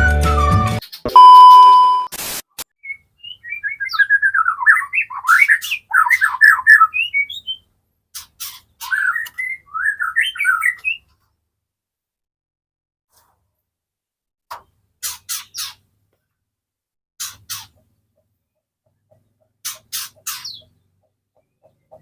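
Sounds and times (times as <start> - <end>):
loud steady beep: 1.1 - 2.1
bird singing chirps and whistles: 2.8 - 7.6, 8.8 - 11.1.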